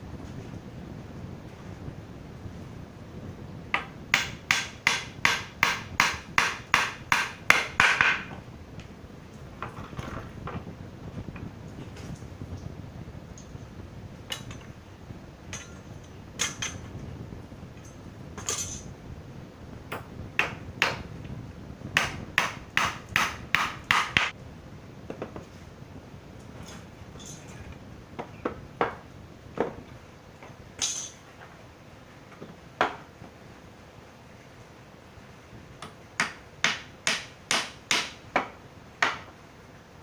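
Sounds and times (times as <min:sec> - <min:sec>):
hammer striking nails into wood: 0:03.8 - 0:08.3, 0:19.9 - 0:21.1, 0:22.0 - 0:24.3, 0:35.8 - 0:39.3.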